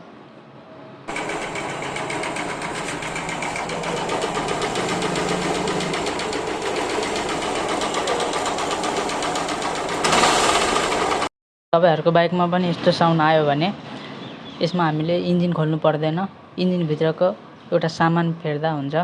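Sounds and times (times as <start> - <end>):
motorcycle engine clattering: 1.1 - 11.3.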